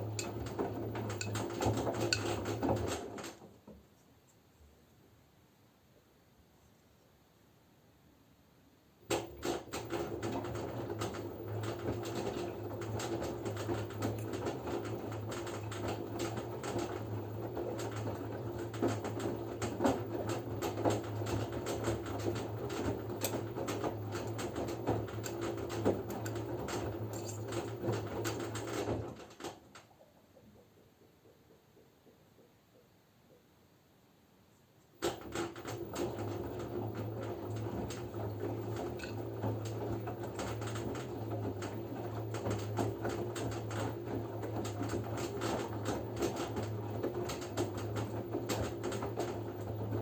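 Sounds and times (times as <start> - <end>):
laundry and water tumbling: 0.0 - 3.6, 9.0 - 29.9, 35.0 - 50.0
washing machine motor hum: 0.0 - 3.6, 9.0 - 30.8, 35.0 - 50.0.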